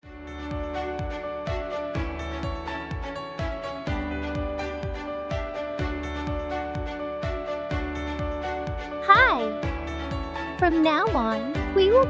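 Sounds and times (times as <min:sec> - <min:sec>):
intro music with steady beat: 0:00.0 - 0:09.0, 0:09.6 - 0:10.6.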